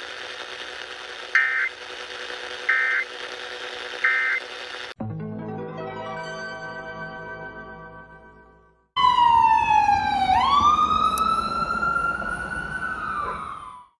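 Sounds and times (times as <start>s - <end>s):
emergency vehicle siren wailing: 9.0s - 14.0s.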